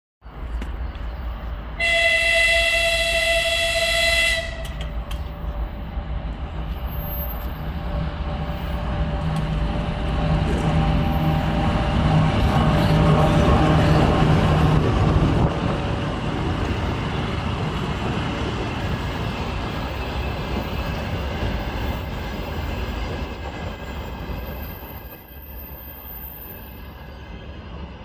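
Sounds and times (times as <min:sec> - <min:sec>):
train rumble: 0:00.2 - 0:28.0
train horn blast: 0:01.8 - 0:05.0.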